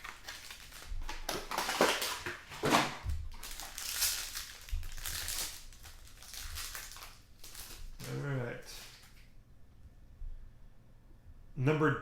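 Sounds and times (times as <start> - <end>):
cardboard packaging crinkling: 0.0 - 9.3.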